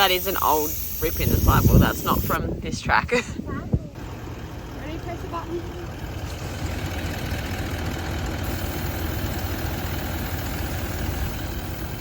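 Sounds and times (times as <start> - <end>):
air compressor running: 0.0 - 2.4, 5.9 - 12.0.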